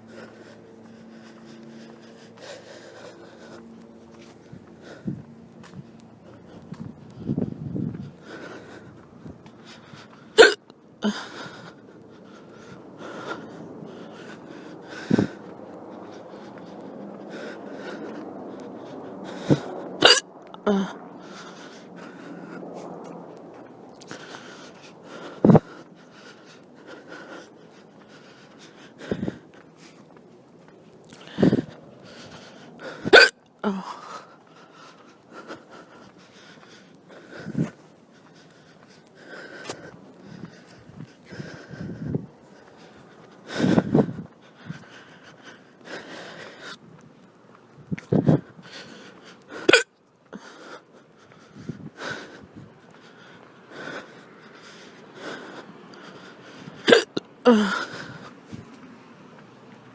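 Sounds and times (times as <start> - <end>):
breathing: 0.0 - 10.4, 11.0 - 59.5
woman hiccuping: 10.4 - 11.2, 20.0 - 20.9, 33.1 - 33.8, 49.6 - 49.9, 56.9 - 57.7.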